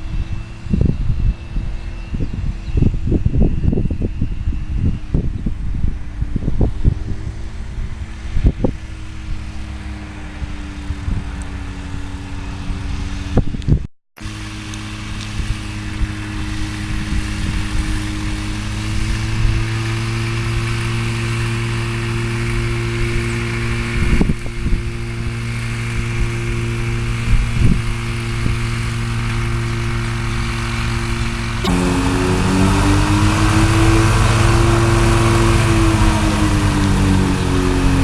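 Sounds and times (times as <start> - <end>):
small piston aircraft engine: 0.0 - 38.0.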